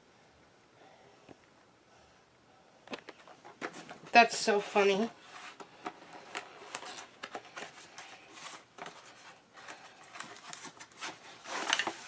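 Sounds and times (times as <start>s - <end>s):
packaging rustling: 5.2s - 12.0s.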